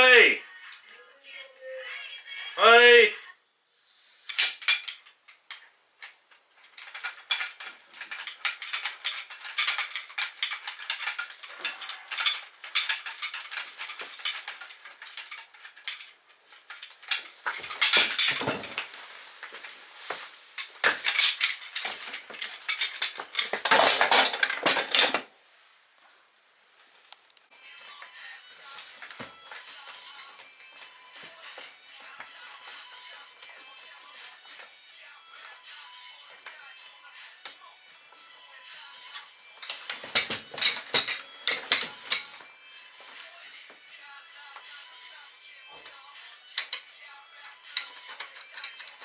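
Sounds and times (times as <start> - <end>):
metal fittings clinking: 4.3 - 25.2, 39.1 - 43.3, 45.7 - 49.0
wooden parts knocking and scraping: 4.3 - 25.3, 39.6 - 43.2.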